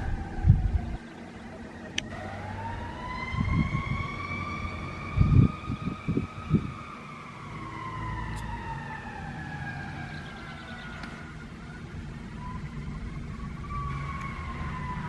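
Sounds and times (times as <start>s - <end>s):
warning siren wailing: 0.0s - 15.0s.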